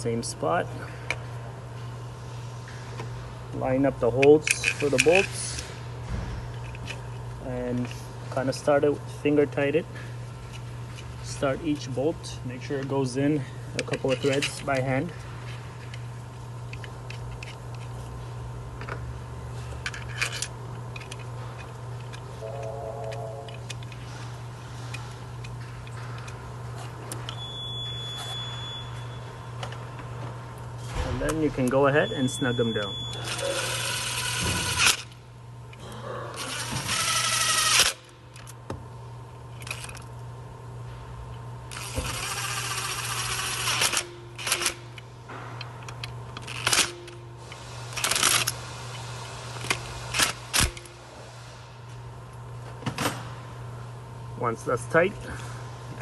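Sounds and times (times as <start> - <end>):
steady low hum: 0.0 - 56.0
steady high-pitched beep: 27.4 - 29.2, 32.0 - 33.3.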